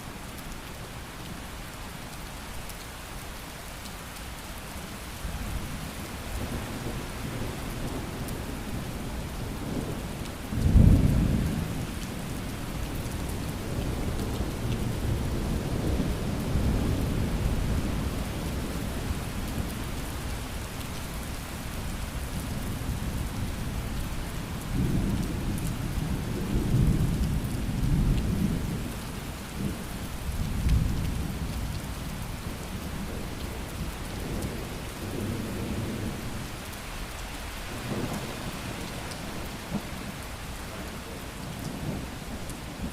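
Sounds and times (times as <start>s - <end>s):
steady rain: 0.0s - 42.9s
thunder: 10.6s - 11.8s.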